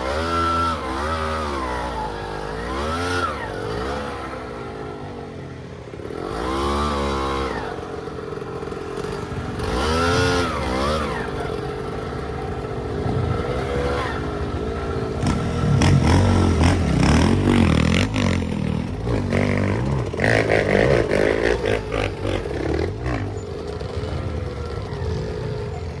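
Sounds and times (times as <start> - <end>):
motorcycle engine revving: 0.0 - 26.0
motorcycle clattering over rough ground: 7.9 - 26.0.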